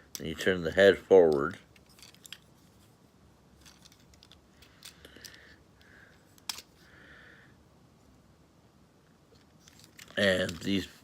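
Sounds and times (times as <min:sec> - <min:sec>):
plastic parts clicking: 0:01.3 - 0:02.7, 0:03.6 - 0:06.8, 0:09.4 - 0:11.0.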